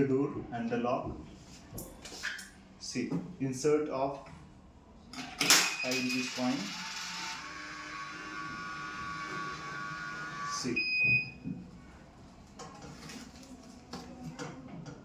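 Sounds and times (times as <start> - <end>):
vending machine motor whining: 5.9 - 10.8.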